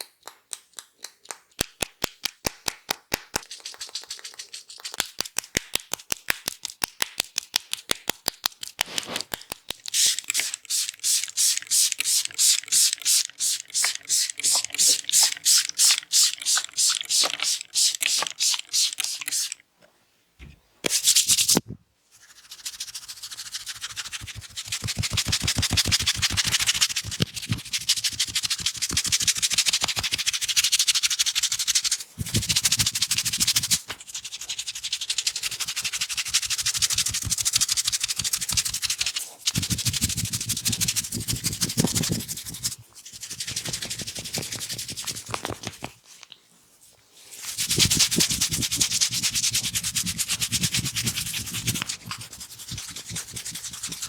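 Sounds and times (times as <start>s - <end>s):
hands rubbing skin in massage: 3.2s - 6.2s, 8.8s - 12.3s, 20.9s - 46.0s, 47.2s - 54.0s.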